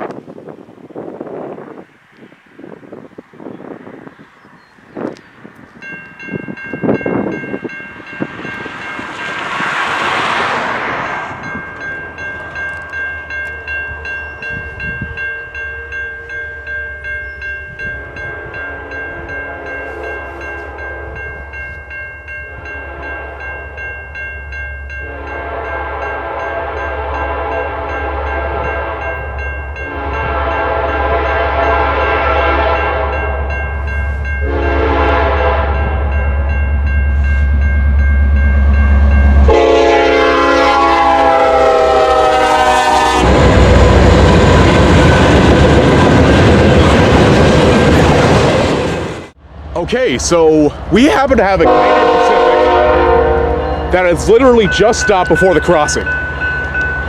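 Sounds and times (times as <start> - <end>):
steady high ringing tone: 11.4 - 31.5
locomotive air horn blasts: 18.0 - 21.3, 22.5 - 23.4, 25.0 - 33.5, 34.4 - 36.1, 39.4 - 44.0, 51.6 - 54.0.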